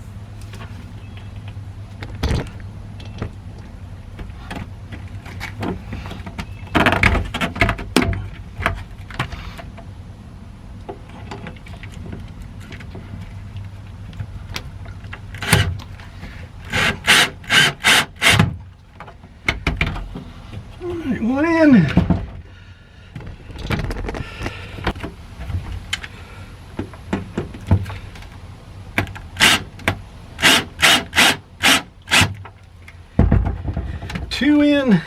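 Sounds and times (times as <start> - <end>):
steady low hum: 0.0 - 35.0
loud knocks: 33.1 - 34.2.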